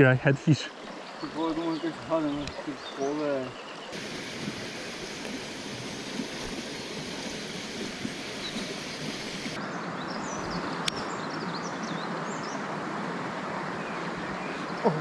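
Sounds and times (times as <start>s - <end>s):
flowing river water: 0.0s - 9.7s, 10.7s - 15.0s
faint high chirps: 4.0s - 9.6s.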